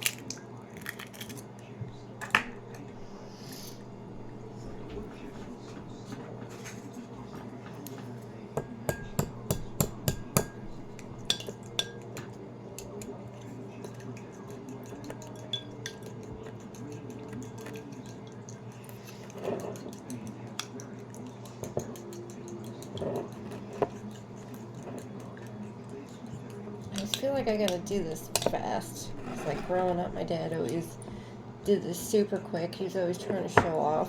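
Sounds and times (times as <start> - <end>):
steady low hum: 0.0 - 34.0
fork clinking against bowl: 8.6 - 28.6.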